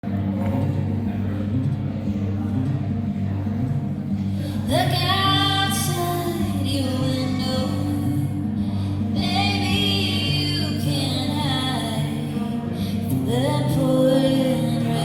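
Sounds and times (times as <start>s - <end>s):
woman singing: 4.4s - 15.0s.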